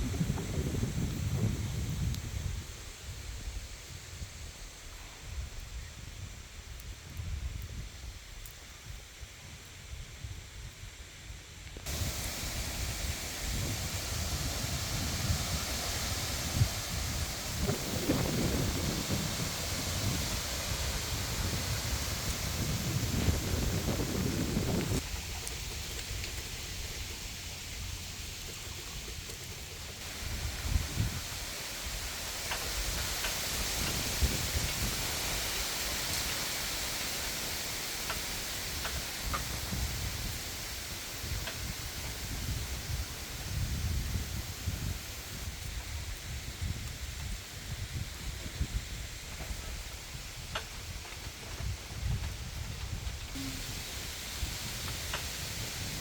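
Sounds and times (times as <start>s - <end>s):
wind gusts on microphone: 0.0s - 56.0s
wind rushing: 11.9s - 25.0s
high chirps: 53.4s - 53.8s.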